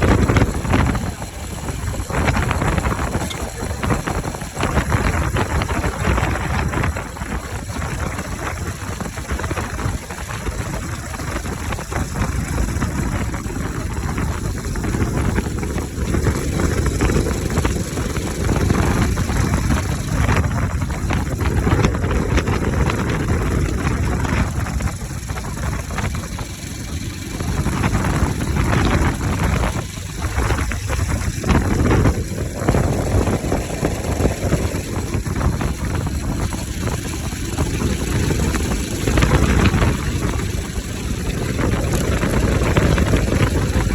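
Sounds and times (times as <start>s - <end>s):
motorcycle engine revving: 0.0s - 43.9s.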